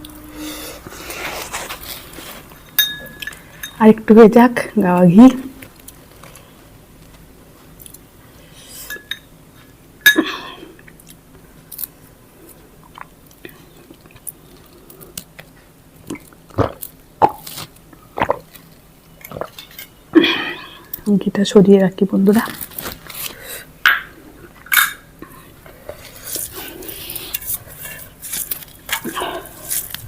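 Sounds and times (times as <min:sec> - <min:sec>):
chewing and wet mouth noises: 0:12.5 - 0:19.8
mouth clicks and smacks: 0:16.1 - 0:18.6.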